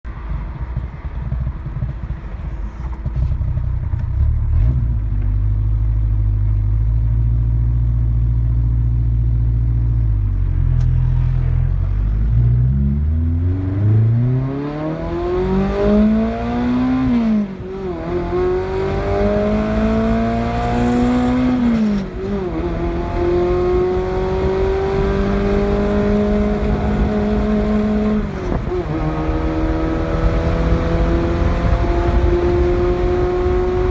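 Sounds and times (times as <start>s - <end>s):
car engine accelerating: 0.1s - 33.9s.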